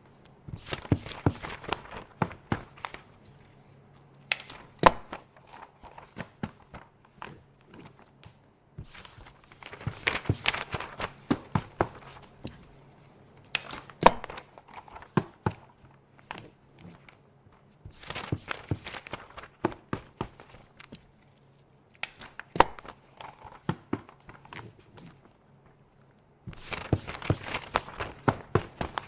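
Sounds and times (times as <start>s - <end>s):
paper rustling: 0.1s - 29.0s.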